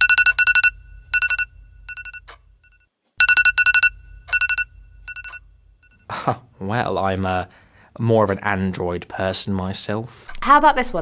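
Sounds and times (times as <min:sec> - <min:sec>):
phone alarm beeping: 0:00.0 - 0:06.2.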